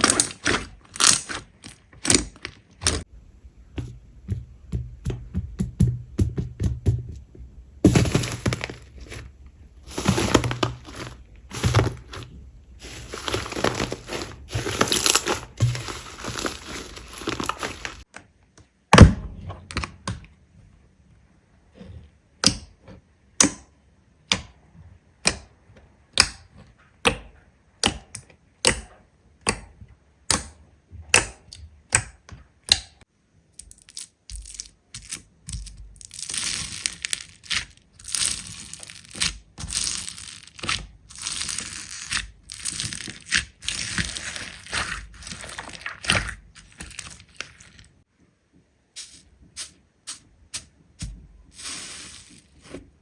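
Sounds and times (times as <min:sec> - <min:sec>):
slime crackling and crunching: 0:00.0 - 0:03.1, 0:07.9 - 0:18.1, 0:33.9 - 0:48.0.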